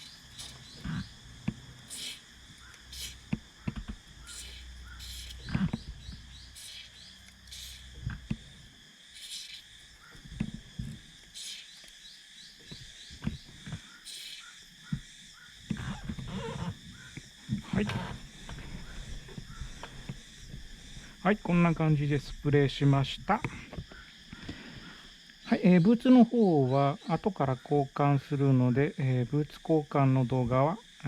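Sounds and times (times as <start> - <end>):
insects chirping: 0.0 - 31.0
aerosol can spraying: 1.9 - 2.2, 2.9 - 3.2, 4.3 - 5.4, 6.6 - 8.4, 9.1 - 9.8, 11.3 - 11.8, 14.0 - 14.5.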